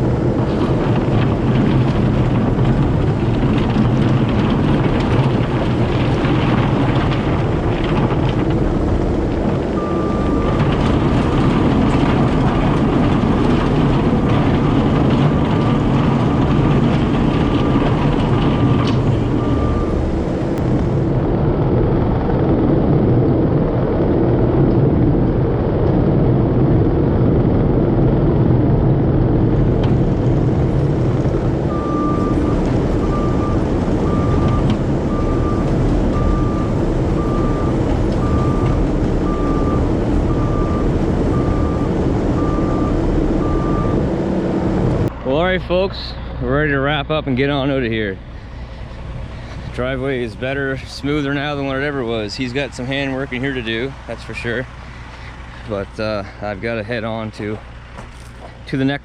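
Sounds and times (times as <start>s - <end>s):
heavy diesel engine running: 0.0s - 59.0s
backup alarm beeping: 9.8s - 12.6s, 13.8s - 20.1s, 31.2s - 44.1s.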